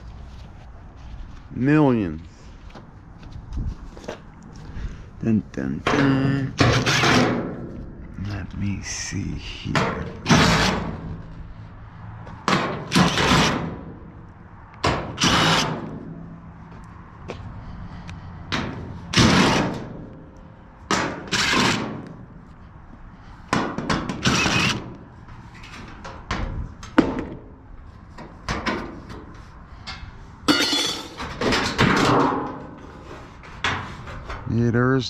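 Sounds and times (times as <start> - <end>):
metal panel thunks and clanks: 30.5 - 32.8.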